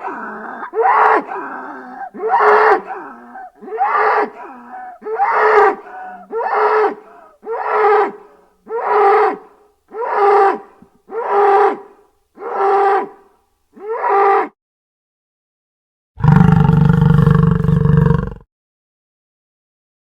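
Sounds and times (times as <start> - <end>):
dinosaur calls: 0.0 - 13.2.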